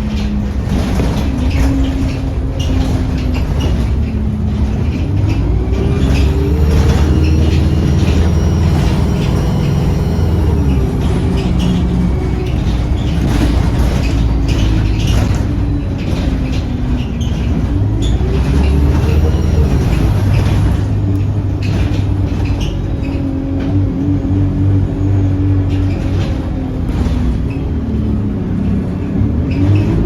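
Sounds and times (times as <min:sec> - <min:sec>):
body rattles and clicks: 0:00.0 - 0:24.0
bus engine running: 0:00.0 - 0:30.0.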